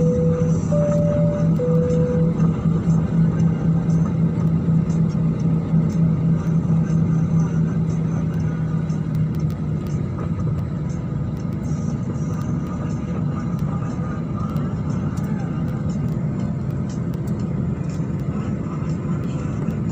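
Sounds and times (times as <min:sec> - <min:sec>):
airliner cabin engine rumble: 0:00.0 - 0:19.9
faint light ticks: 0:09.1 - 0:10.0, 0:14.4 - 0:18.3.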